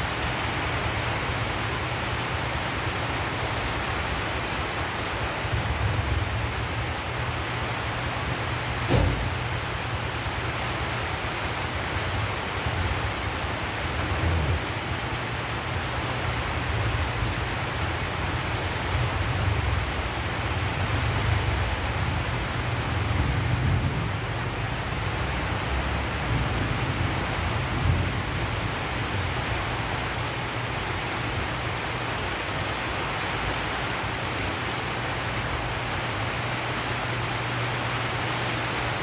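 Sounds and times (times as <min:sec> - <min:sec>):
rain drumming on a metal roof: 0:00.0 - 0:39.0.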